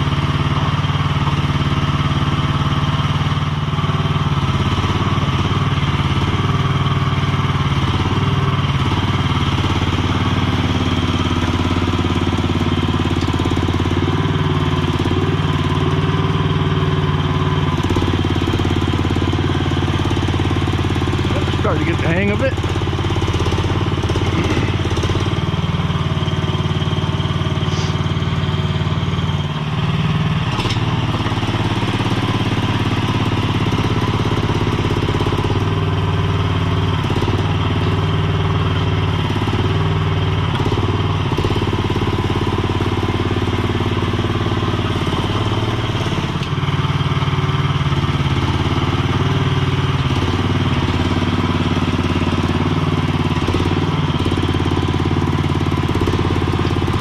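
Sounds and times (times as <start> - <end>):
small engine running: 0.0 - 57.0.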